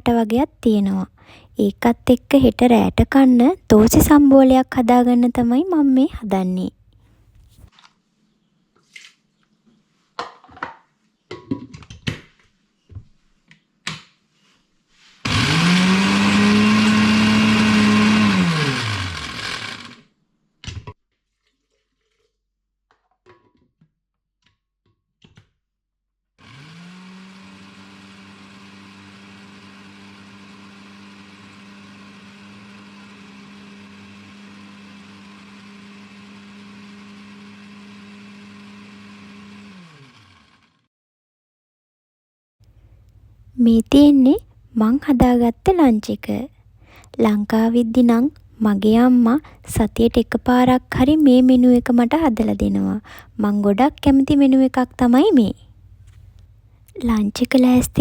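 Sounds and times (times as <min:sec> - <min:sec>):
blender grinding: 0:15.2 - 0:20.1, 0:26.4 - 0:40.9.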